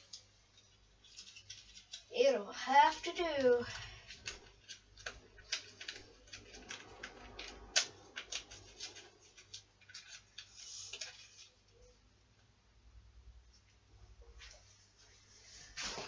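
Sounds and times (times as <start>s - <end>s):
rustling: 0.0s - 2.1s, 2.9s - 11.9s, 13.6s - 16.0s
small objects clicking and tapping: 0.0s - 2.1s
scraping rustle: 14.4s - 16.0s.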